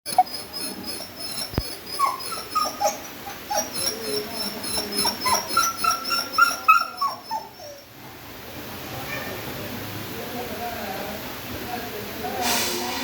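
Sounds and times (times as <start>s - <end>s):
dog whining and yipping: 0.1s - 7.9s.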